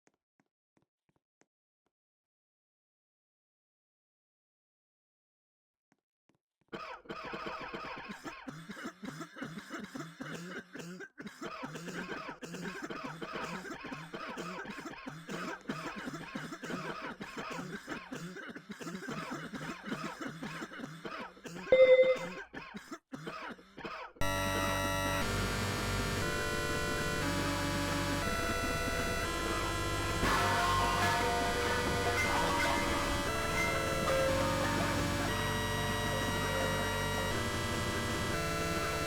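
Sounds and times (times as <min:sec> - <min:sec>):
person coughing: 0:06.8 - 0:24.2
brief loud tone: 0:21.7 - 0:22.3
steady buzzing with held tones: 0:24.3 - 0:39.0.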